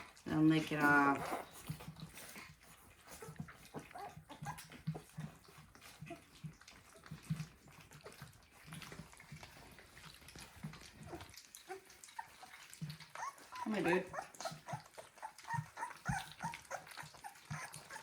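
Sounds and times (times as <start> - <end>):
puppies grunting: 0.0 - 18.0
puppies smacking and slurping: 0.0 - 18.0.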